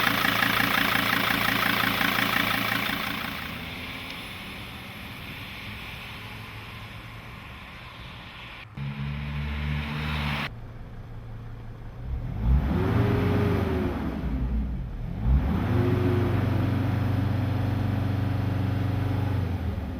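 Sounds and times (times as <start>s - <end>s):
engine revving: 0.0s - 7.1s, 8.6s - 10.5s, 12.0s - 19.9s
diesel van engine running: 0.0s - 12.9s.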